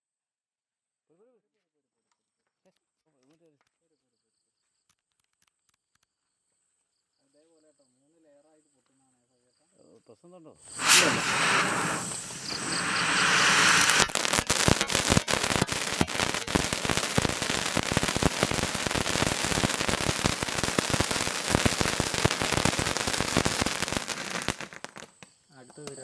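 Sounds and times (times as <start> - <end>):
firework hiss: 10.7 - 25.2
firework crackling and pops: 10.7 - 26.0.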